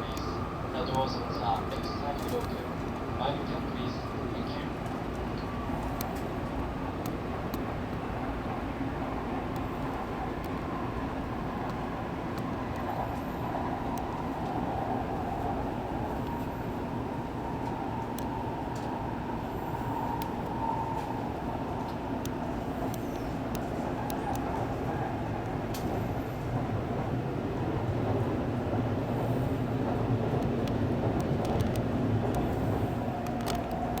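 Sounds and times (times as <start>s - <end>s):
train wheels and air rumbling: 0.0s - 34.0s
small clicks and ticks: 33.2s - 34.0s.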